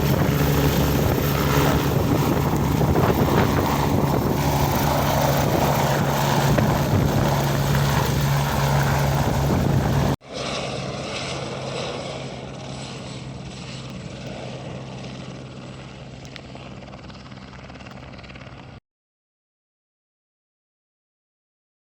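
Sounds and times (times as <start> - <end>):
helicopter rotor and engine: 0.0 - 18.8.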